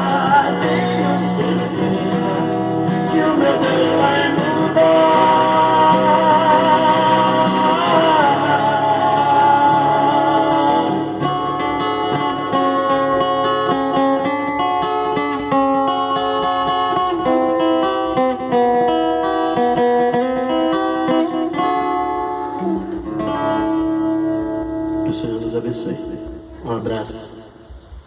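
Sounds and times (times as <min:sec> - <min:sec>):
gospel singing with vibrato: 0:00.0 - 0:12.5
acoustic guitar picking: 0:00.0 - 0:26.8
backing track: 0:00.0 - 0:28.0.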